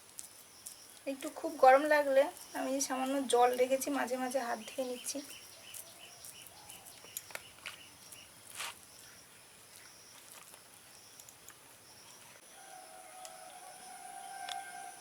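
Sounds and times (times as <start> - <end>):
insects chirring: 0.0 - 15.0
faint steady tone: 8.9 - 15.0.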